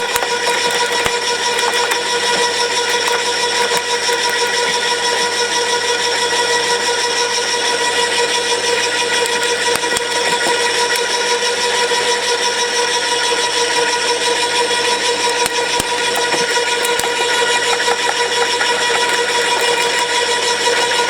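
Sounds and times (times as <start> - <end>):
sharp clicks: 0.0 - 5.0, 15.3 - 21.0
garden shredder whining: 0.0 - 21.0.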